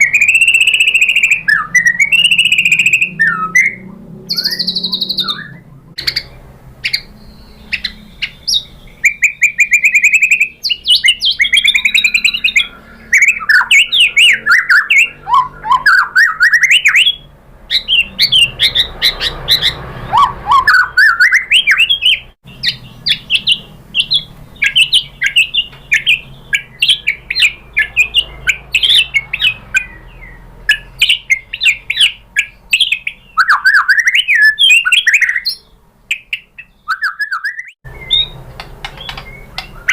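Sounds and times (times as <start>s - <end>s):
bird singing whistles and chatter: 0.0s - 39.9s.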